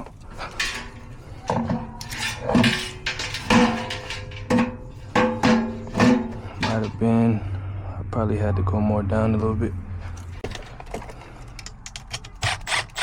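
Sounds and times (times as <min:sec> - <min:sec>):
fan blade clanking on metal housing: 0:00.0 - 0:07.6.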